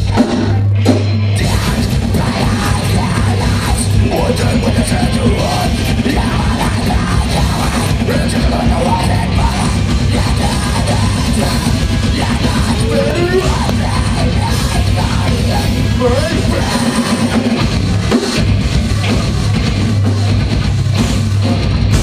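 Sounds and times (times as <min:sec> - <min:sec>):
distorted guitars: 0:00.0 - 0:22.0
drums: 0:00.0 - 0:22.0
yelled vocals: 0:00.0 - 0:22.0.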